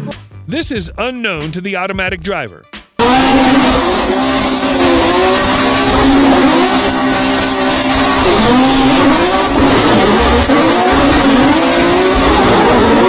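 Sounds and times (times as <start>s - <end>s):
car engine at high revs: 3.0s - 13.0s.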